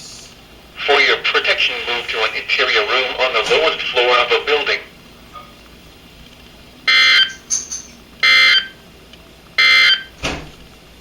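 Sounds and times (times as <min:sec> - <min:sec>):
digital data tone bursts: 0:06.9 - 0:08.8.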